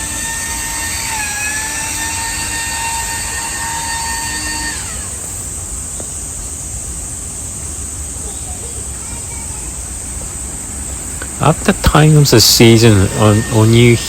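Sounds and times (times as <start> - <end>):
constant high hiss: 0.0 - 14.0
machine high whine: 0.0 - 14.0.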